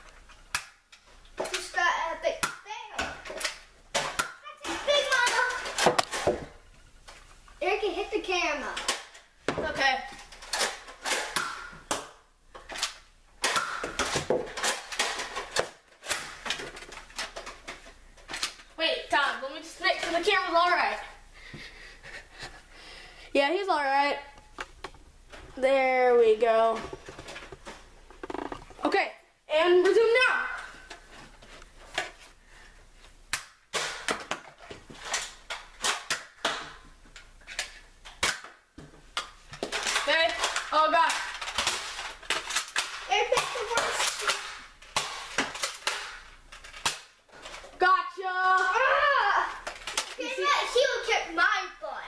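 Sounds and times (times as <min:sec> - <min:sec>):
darts striking things: 0:10.5 - 0:12.2
darts striking surfaces: 0:10.5 - 0:16.6.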